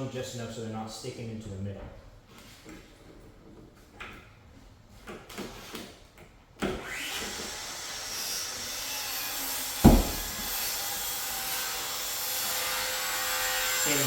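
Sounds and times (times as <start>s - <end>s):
loud knock: 9.8s - 10.5s.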